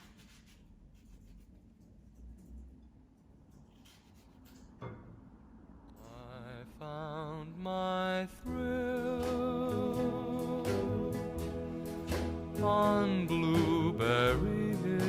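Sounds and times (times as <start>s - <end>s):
song with wavering singing voice: 6.0s - 15.0s.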